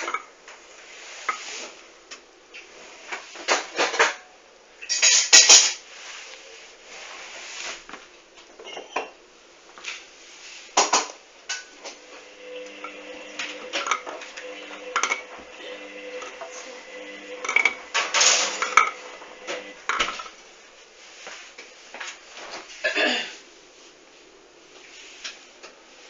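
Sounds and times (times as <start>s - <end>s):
washing machine tumbling: 11.6s - 20.6s.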